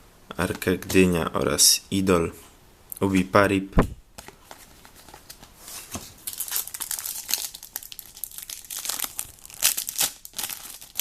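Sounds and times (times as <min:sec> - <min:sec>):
plastic wrapper crinkling and tearing: 0:04.2 - 0:11.0.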